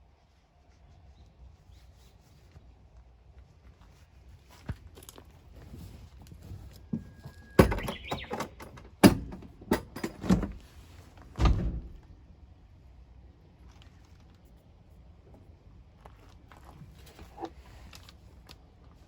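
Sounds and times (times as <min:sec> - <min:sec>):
knocks and thunks: 0:06.9 - 0:10.6, 0:11.3 - 0:12.1.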